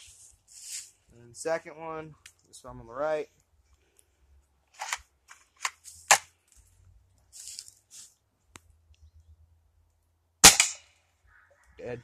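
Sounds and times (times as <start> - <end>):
air rifle shot: 10.4 - 10.9.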